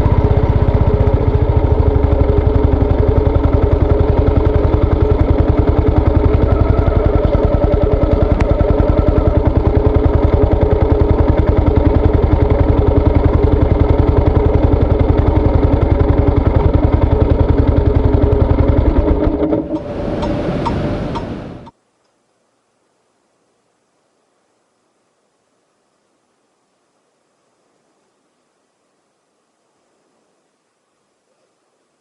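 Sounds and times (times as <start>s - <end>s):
motorcycle engine running: 0.0s - 21.7s.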